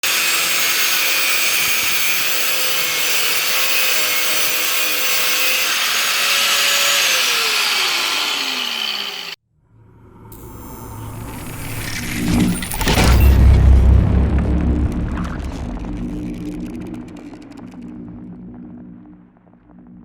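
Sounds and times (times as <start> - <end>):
power tool motor running: 0.0 - 9.4.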